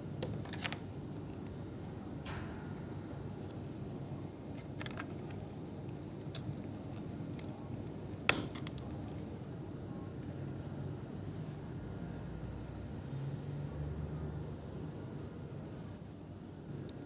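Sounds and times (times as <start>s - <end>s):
sharp loud snap: 2.2s - 4.0s.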